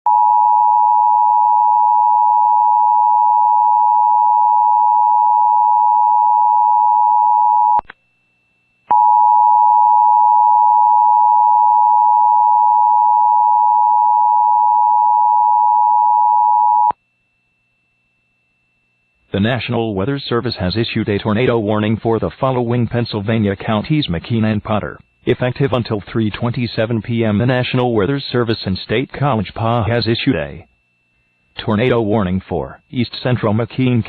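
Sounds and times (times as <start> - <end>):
click: 7.8 - 8.0.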